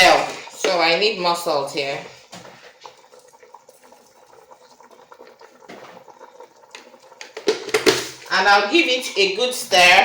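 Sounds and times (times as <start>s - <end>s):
soup bubbling in a pot: 0.0s - 10.0s
small pops: 2.3s - 8.2s.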